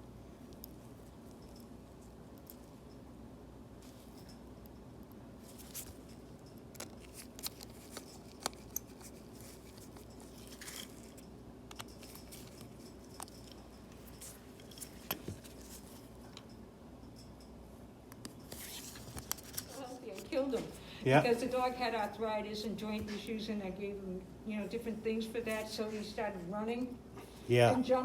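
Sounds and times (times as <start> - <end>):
low steady hum: 0.0 - 28.0
small tools clicking and tapping: 4.2 - 20.2.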